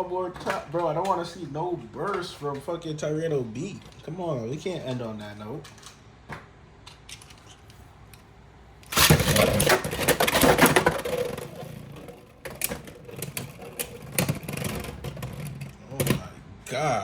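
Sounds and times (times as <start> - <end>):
spinning tops whirring: 8.8 - 15.9
spinning tops clashing: 8.9 - 15.7.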